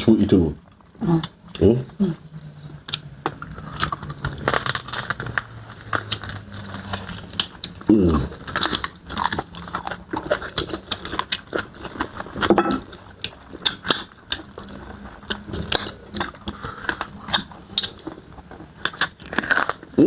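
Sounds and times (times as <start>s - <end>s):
biting and chewing: 2.6s - 20.0s.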